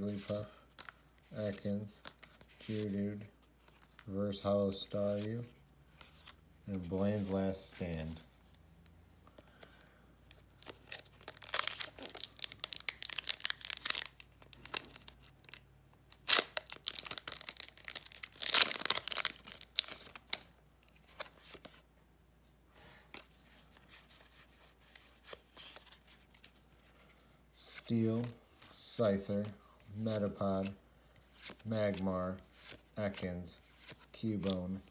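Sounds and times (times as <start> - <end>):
rustling of pack and cards: 0.0 - 21.9, 22.9 - 34.9
foil wrapper tearing and crinkling: 11.2 - 20.3.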